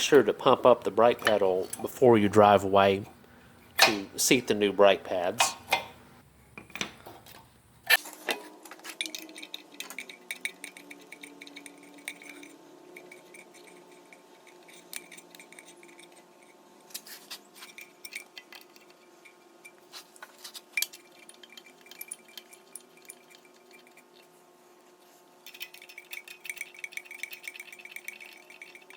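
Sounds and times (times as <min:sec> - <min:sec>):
faint steady hum: 0:00.0 - 0:28.9
light metallic clinks and taps: 0:08.8 - 0:16.2, 0:17.6 - 0:24.2.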